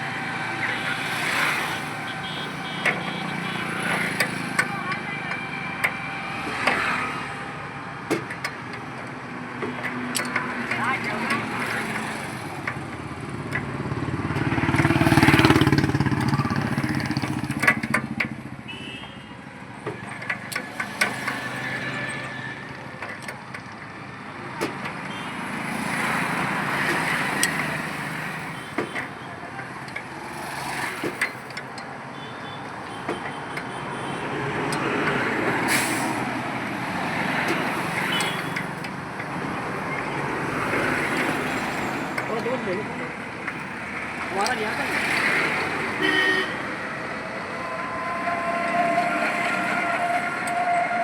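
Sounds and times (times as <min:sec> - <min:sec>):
vehicles passing on road: 0:00.0 - 0:51.0
sharp clicks and knocks: 0:02.0 - 0:07.0, 0:08.0 - 0:18.6, 0:19.6 - 0:24.0, 0:24.6 - 0:33.8, 0:37.0 - 0:45.8.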